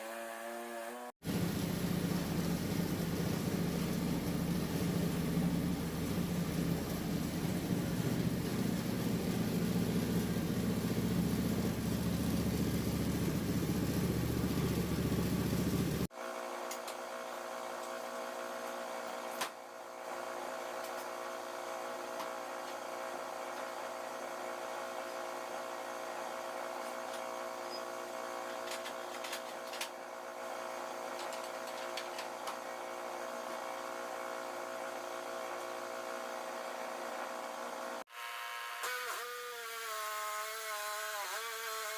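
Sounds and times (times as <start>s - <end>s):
bandsaw mill sawing a log: 0.0s - 1.1s, 32.9s - 41.9s.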